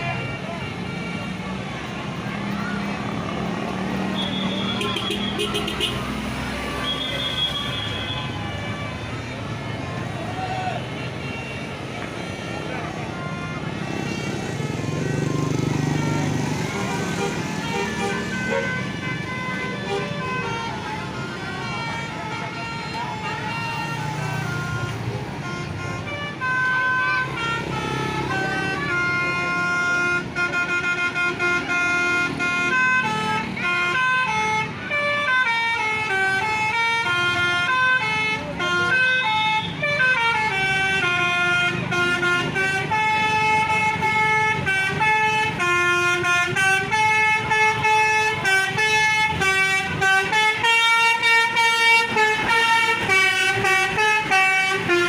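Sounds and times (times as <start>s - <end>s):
multi-tone bus air horn tune: 4.1s - 9.1s, 16.0s - 55.0s.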